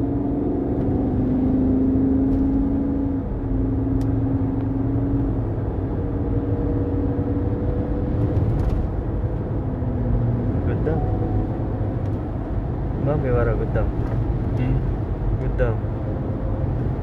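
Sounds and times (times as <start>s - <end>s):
road rumble: 0.0s - 17.0s
drivetrain droning hum: 10.6s - 16.9s.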